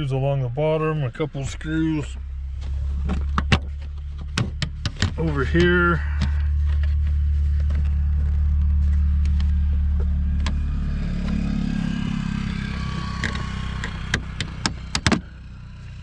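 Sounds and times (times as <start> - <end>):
car engine humming: 0.0 - 16.0
sharp clicks and knocks: 3.0 - 10.6, 13.1 - 15.3.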